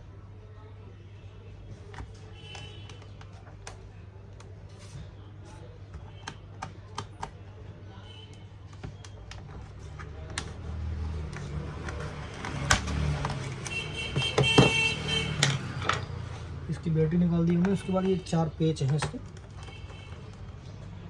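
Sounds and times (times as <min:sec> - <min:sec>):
laptop battery scraping and rubbing: 0:01.8 - 0:03.8, 0:08.7 - 0:15.3, 0:19.1 - 0:20.6.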